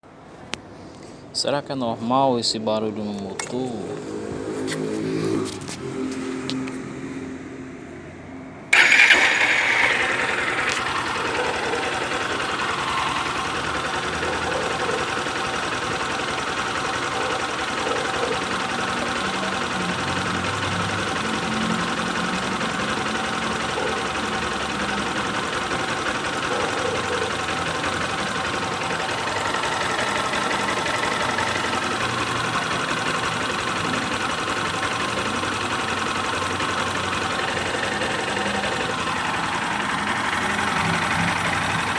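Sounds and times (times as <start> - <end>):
mechanical engine noise: 2.1 - 41.9
motorcycle engine idling: 8.7 - 41.9.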